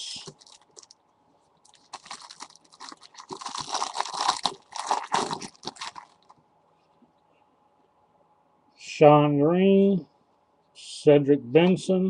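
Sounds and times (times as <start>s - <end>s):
plastic wrapper crinkling: 0.0s - 1.0s, 1.6s - 6.4s.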